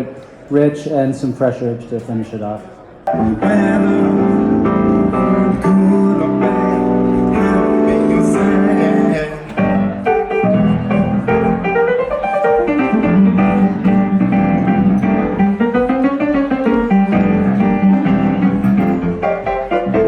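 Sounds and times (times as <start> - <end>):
instrumental piano and guitar music: 3.1 - 20.0.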